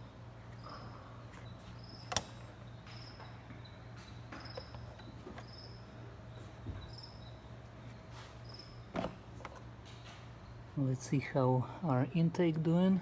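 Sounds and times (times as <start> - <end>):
cricket chirping: 0.0 - 7.6, 8.4 - 9.0
steady low hum: 0.0 - 13.0.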